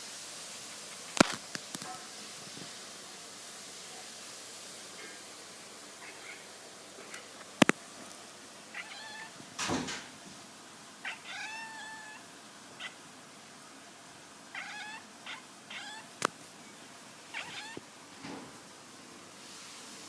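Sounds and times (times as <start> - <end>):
cat meowing: 8.7 - 9.4, 11.0 - 13.0, 14.5 - 16.2, 17.3 - 17.8.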